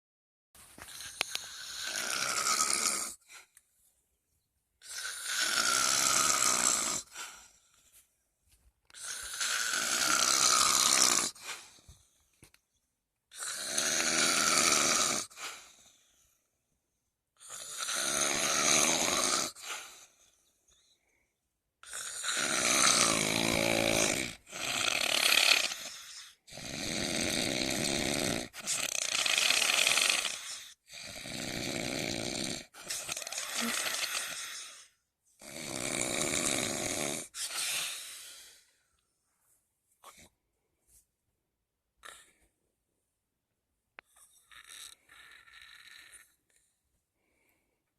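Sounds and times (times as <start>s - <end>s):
snoring: 0.8s - 3.6s, 4.8s - 7.9s, 8.9s - 12.2s, 13.3s - 16.4s, 17.4s - 21.1s, 21.8s - 38.8s, 42.0s - 42.5s, 44.0s - 47.6s.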